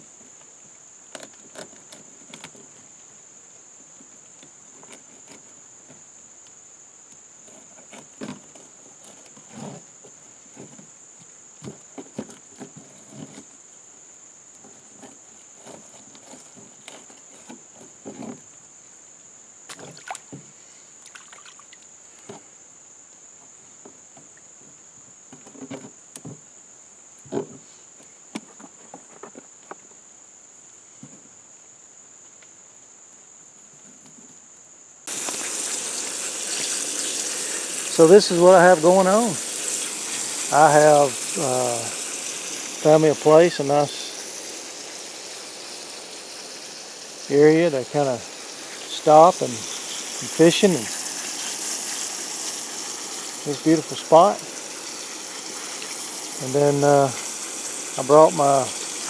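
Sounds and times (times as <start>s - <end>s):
insects droning: 0.0s - 59.0s.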